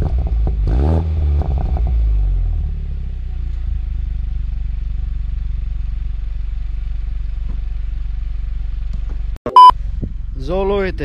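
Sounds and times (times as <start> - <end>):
car engine idling: 2.6 - 10.5.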